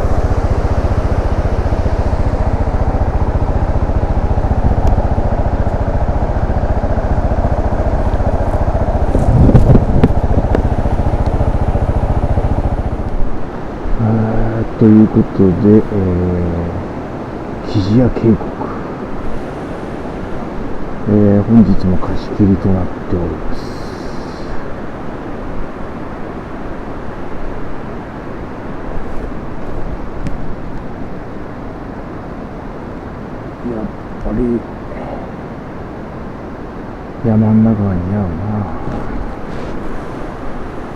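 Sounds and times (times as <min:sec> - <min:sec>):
motorcycle engine running: 0:00.0 - 0:14.8, 0:18.8 - 0:22.0.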